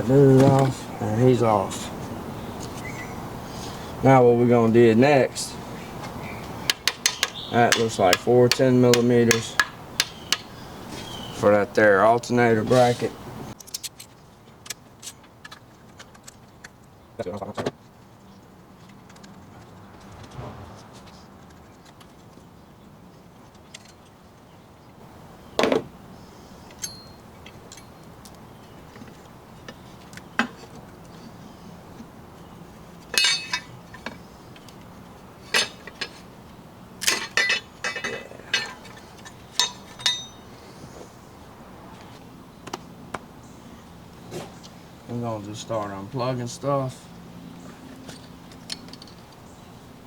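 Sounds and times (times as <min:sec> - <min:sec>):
hand tools clinking on metal: 0:06.7 - 0:10.5, 0:26.7 - 0:28.0, 0:33.1 - 0:34.2, 0:35.4 - 0:36.3, 0:37.0 - 0:40.5.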